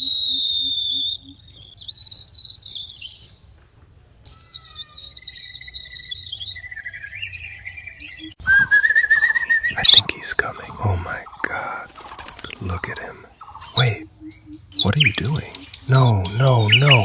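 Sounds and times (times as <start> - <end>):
small bird whistling: 0.0 - 3.4, 4.1 - 10.6, 13.3 - 17.0.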